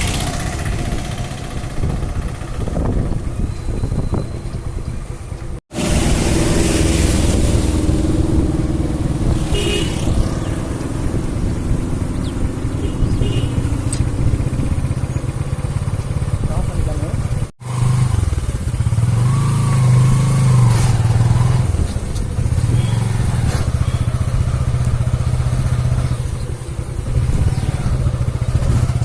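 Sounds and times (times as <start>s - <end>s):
motorcycle engines running: 0.0s - 29.0s
road traffic: 0.0s - 29.0s
horn toots: 9.2s - 10.7s, 12.7s - 14.0s, 22.6s - 24.3s.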